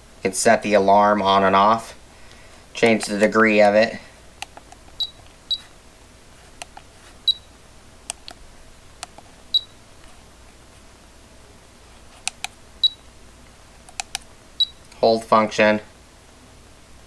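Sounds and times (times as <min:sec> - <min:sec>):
short high beeps: 0:09.6 - 0:09.8.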